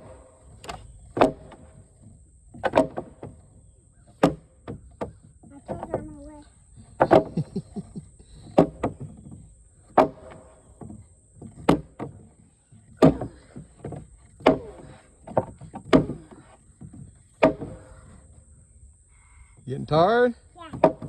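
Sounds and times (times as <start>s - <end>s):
mallet striking timber: 0.0s - 1.7s, 2.6s - 3.3s, 4.2s - 4.8s, 7.0s - 7.4s, 9.9s - 10.6s, 11.6s - 12.1s, 14.4s - 16.4s, 17.4s - 18.0s, 20.7s - 21.0s.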